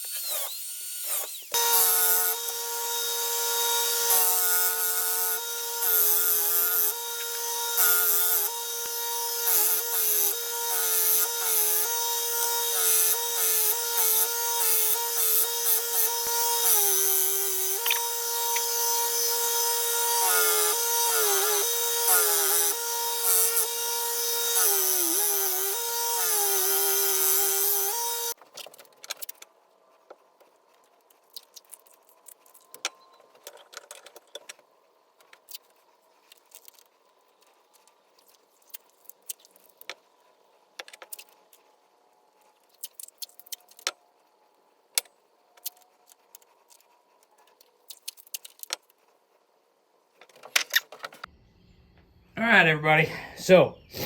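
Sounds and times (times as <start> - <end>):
electric sander whining: 0.9 - 28.4.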